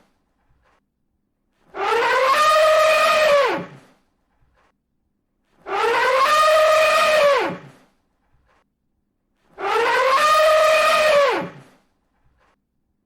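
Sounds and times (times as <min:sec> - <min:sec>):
elephant trumpeting: 0:01.7 - 0:03.9, 0:05.6 - 0:07.8, 0:09.6 - 0:11.8.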